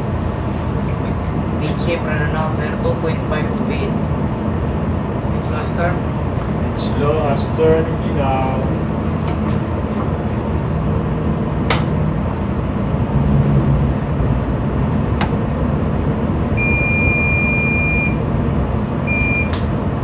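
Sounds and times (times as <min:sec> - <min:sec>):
ship engine rumble: 0:00.0 - 0:20.0
electronic beep: 0:16.6 - 0:18.2, 0:19.1 - 0:19.6.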